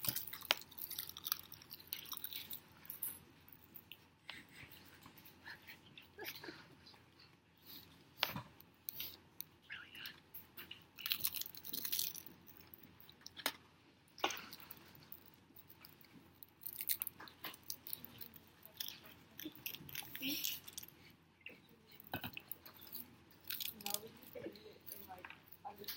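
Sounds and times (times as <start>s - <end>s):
seaweed crunching while chewed: 0.0s - 2.6s, 11.0s - 13.4s, 16.4s - 21.0s, 22.1s - 24.2s.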